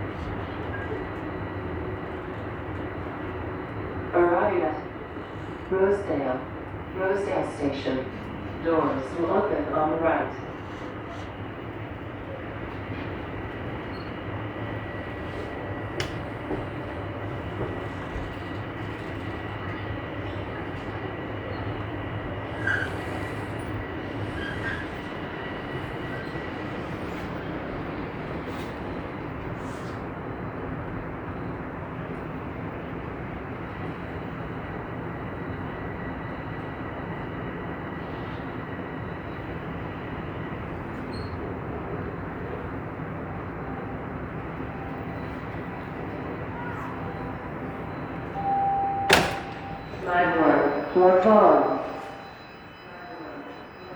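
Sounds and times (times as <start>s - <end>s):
subway train rumble and hiss: 0.0s - 53.9s
faint high whine: 43.8s - 53.9s
faint high tone: 44.9s - 53.9s.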